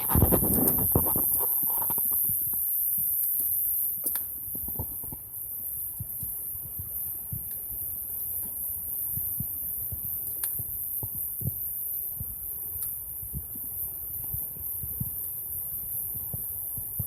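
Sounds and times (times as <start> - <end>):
fire pops and snaps: 0.0 - 5.3, 9.2 - 17.0
steady high hiss: 0.0 - 17.0
wood fire crackling: 0.0 - 17.0.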